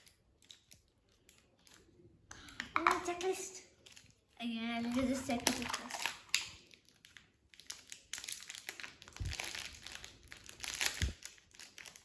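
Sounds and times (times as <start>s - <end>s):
packaging crinkling: 5.0s - 12.0s.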